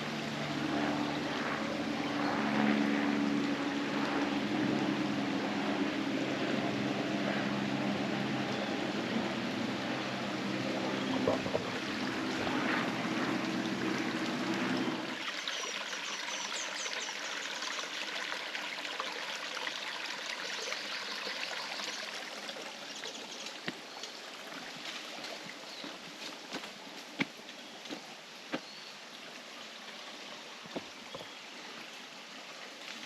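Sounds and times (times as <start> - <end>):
low steady hum: 0.0 - 15.2
stream trickling over rocks: 8.9 - 33.0.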